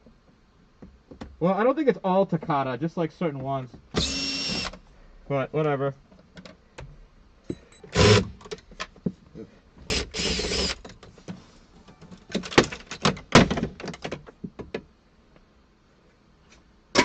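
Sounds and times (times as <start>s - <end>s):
car parts and tools clicking: 6.1s - 9.2s, 9.8s - 14.9s.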